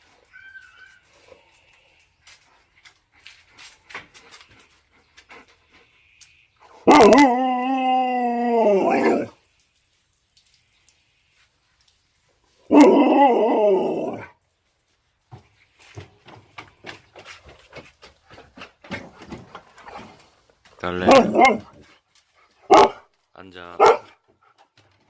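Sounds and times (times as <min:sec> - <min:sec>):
dog howling: 0:06.8 - 0:09.3, 0:12.7 - 0:14.3.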